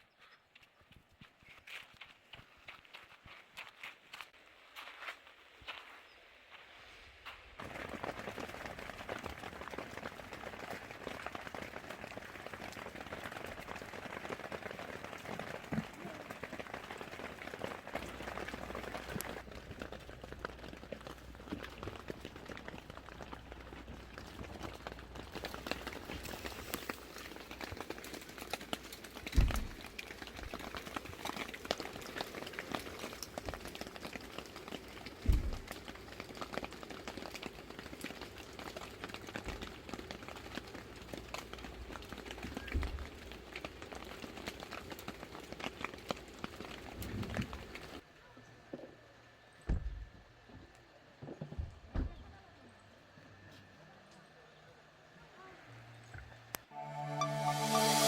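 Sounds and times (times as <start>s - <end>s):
rain pattering: 7.6s - 48.0s.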